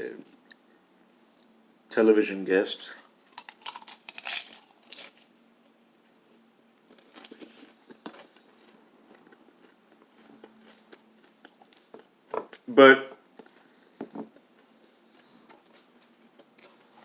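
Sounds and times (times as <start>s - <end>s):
crunchy snack being chewed: 3.0s - 5.4s, 6.9s - 12.6s.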